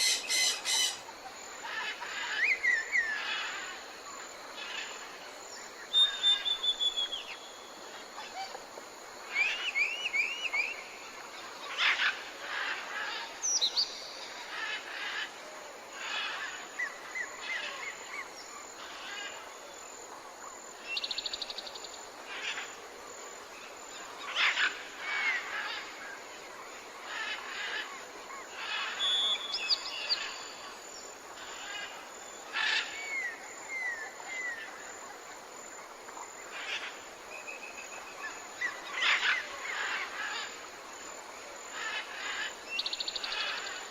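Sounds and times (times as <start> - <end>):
birds calling and chirping: 0.0 - 3.5
faint steady hiss: 0.0 - 43.9.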